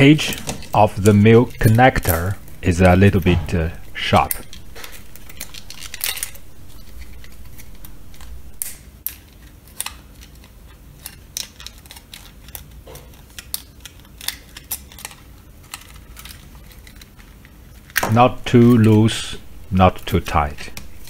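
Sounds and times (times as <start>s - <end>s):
wire connectors clicking: 0.0s - 8.8s, 18.0s - 21.0s.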